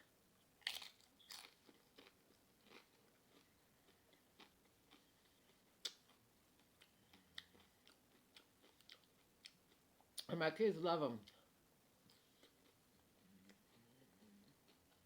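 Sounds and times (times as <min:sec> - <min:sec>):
chips crunching while chewing: 0:00.6 - 0:03.5.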